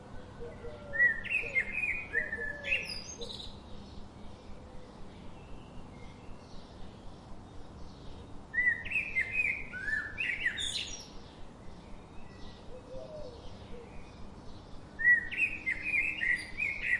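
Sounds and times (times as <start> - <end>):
bird chirping: 5.2 - 16.9.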